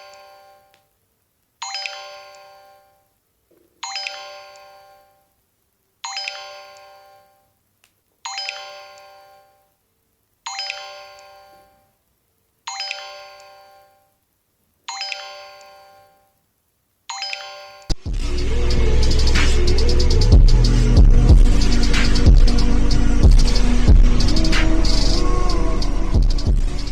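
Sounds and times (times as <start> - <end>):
phone ringtone chime: 0.0 - 0.7, 1.6 - 3.1, 3.8 - 5.3, 6.0 - 7.5, 8.3 - 9.7, 10.5 - 11.9, 12.7 - 14.1, 14.9 - 16.3, 17.1 - 18.0
loud music with low throb: 18.0 - 26.9.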